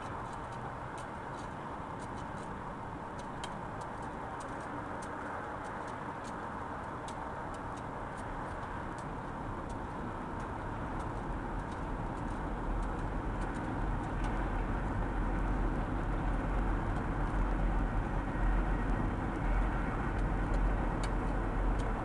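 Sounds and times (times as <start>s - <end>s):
small sharp clicks: 3.2s - 6.4s.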